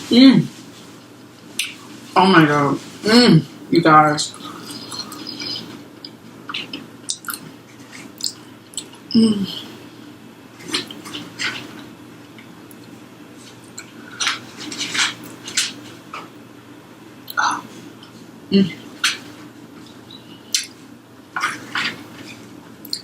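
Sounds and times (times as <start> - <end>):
chewing fried chicken: 10.6 - 16.4.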